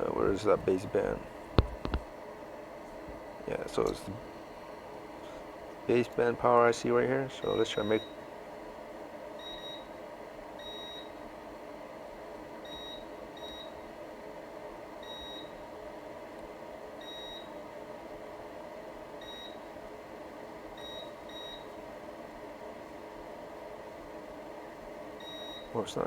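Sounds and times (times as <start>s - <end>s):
steady low hum: 0.0s - 26.0s
multimeter high beeps: 7.4s - 8.2s, 9.4s - 9.9s, 10.6s - 11.1s, 12.7s - 13.8s, 20.8s - 21.7s, 25.2s - 25.7s.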